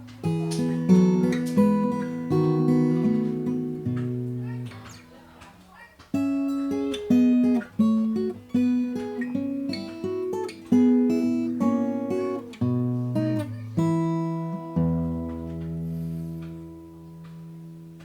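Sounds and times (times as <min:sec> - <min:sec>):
acoustic guitar playing: 0:00.0 - 0:18.0.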